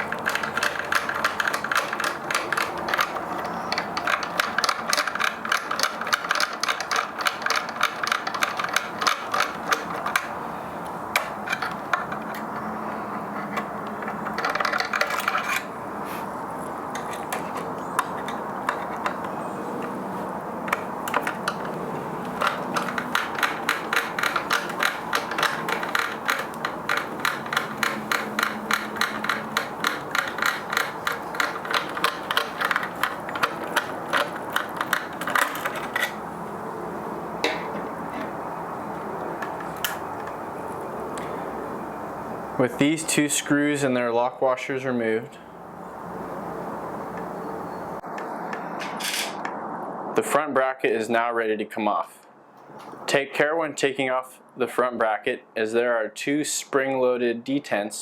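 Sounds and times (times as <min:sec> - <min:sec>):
screwdriver clicking: 0:00.0 - 0:10.3, 0:20.7 - 0:36.2.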